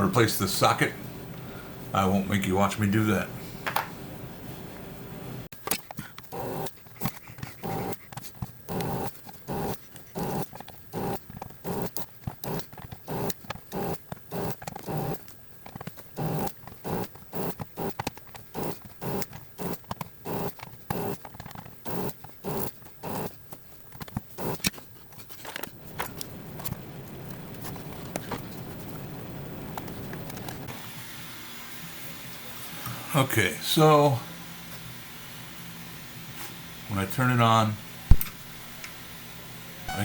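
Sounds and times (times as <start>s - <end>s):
steady low hum: 0.0s - 5.5s, 6.2s - 23.6s, 25.7s - 31.0s.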